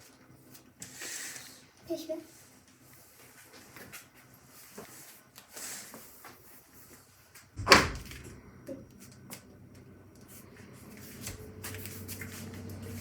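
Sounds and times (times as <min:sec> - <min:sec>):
door shutting bang: 0:07.6 - 0:08.4
low steady hum: 0:07.6 - 0:13.0.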